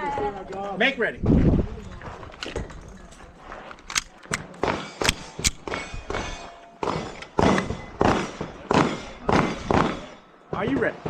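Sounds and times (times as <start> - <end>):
pistol being loaded: 3.7 - 5.8.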